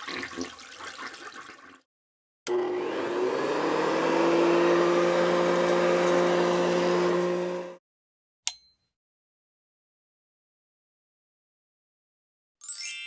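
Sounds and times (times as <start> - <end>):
machine hum: 2.5 - 7.8.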